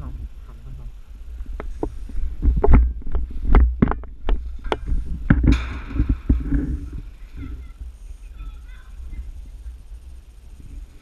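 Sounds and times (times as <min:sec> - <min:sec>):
steady low rumble: 0:00.0 - 0:11.0
sharp knocks and clicks: 0:01.6 - 0:06.6.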